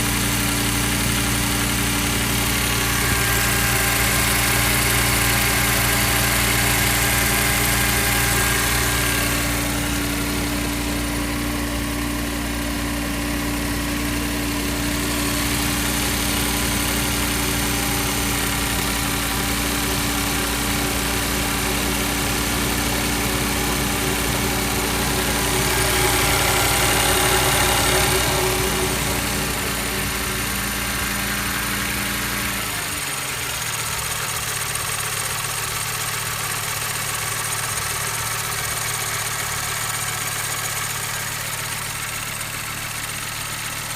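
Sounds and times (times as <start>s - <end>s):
engine idling: 0.0s - 43.9s.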